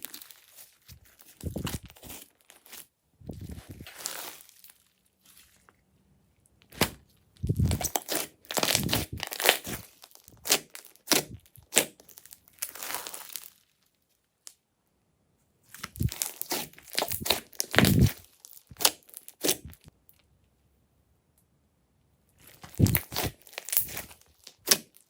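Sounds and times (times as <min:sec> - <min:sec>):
hands squishing slime: 0:06.7 - 0:12.0, 0:15.8 - 0:19.7, 0:22.5 - 0:25.0.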